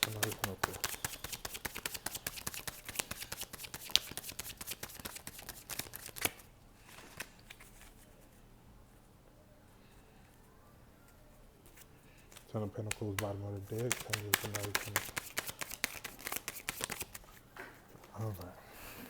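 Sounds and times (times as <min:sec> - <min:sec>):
cards being shuffled: 0:00.0 - 0:08.1, 0:11.6 - 0:17.4.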